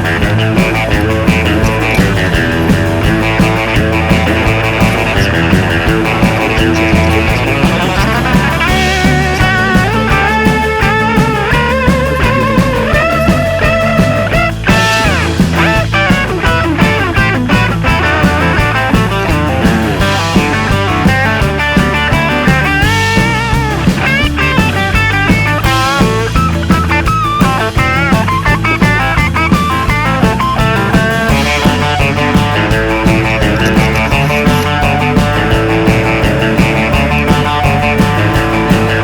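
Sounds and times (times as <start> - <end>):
rock music with electric guitar: 0.0 - 39.0.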